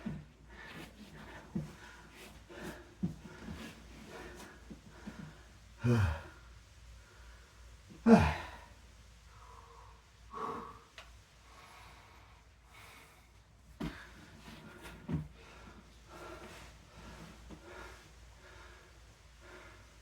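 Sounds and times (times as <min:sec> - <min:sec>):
man breathing hard with grunts: 0:05.8 - 0:06.3, 0:08.1 - 0:08.7.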